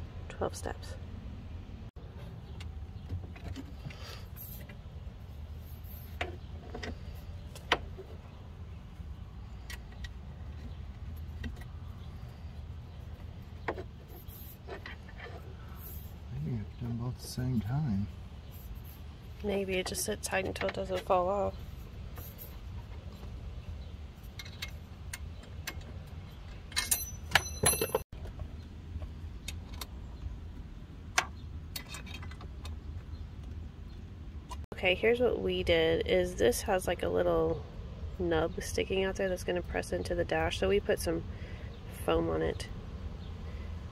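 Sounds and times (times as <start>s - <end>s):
ringing metallic clinks: 26.7s - 28.0s.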